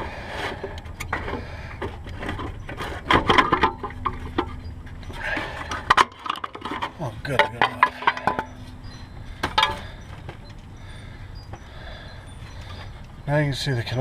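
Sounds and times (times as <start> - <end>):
metal tools clicking and scraping: 2.0 - 10.7.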